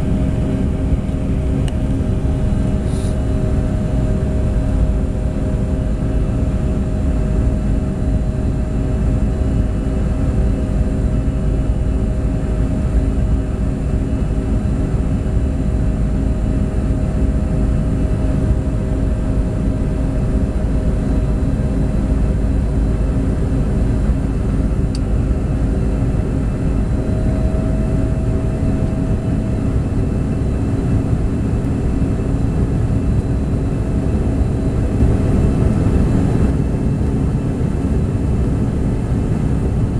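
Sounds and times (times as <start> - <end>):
jet engine cabin rumble: 0.0 - 39.9
jet engine whining tones: 24.9 - 39.9.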